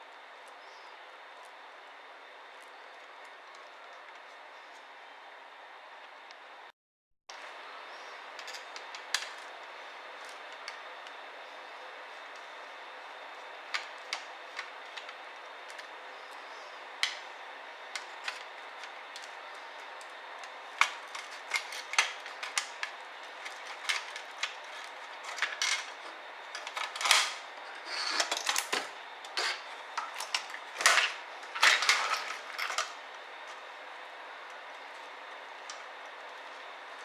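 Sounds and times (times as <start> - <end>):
laptop parts clicking and scraping: 17.9 - 33.6.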